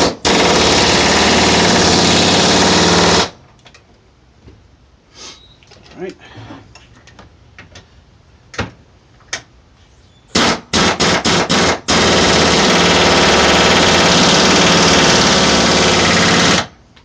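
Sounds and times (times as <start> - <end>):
pneumatic impact wrench hammering: 0.0 - 3.4, 10.3 - 16.7.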